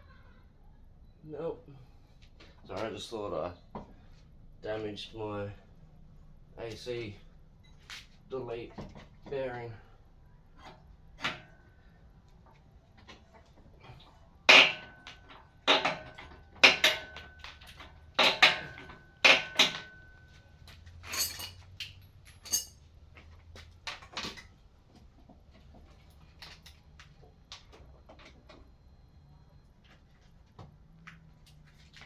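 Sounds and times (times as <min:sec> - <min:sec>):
metal clanking on metal: 0:13.2 - 0:20.4, 0:21.0 - 0:22.8
high metallic ringing tone: 0:14.5 - 0:21.6, 0:22.4 - 0:22.8.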